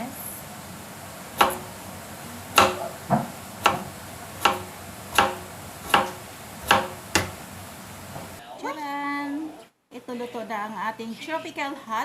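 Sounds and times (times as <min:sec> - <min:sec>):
knife chopping on cutting board: 0:01.4 - 0:01.8, 0:02.5 - 0:07.4.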